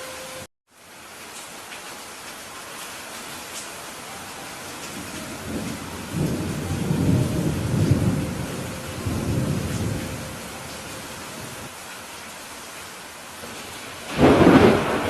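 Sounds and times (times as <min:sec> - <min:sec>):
heavy rain: 0:00.0 - 0:15.0
thunder rolling: 0:04.9 - 0:11.7, 0:13.5 - 0:15.0.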